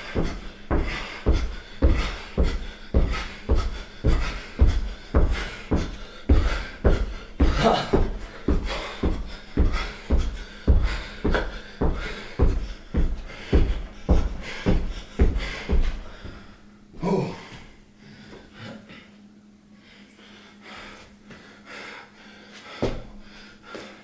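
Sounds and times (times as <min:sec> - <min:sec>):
dull thumps: 0:00.0 - 0:16.5
person breathing heavily: 0:00.0 - 0:19.1, 0:19.8 - 0:24.0.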